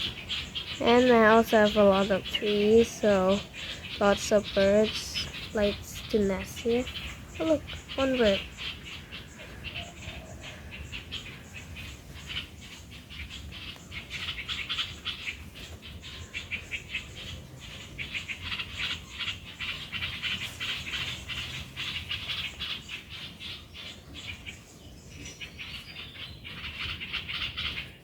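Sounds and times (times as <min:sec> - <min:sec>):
many birds calling: 0:00.0 - 0:28.0.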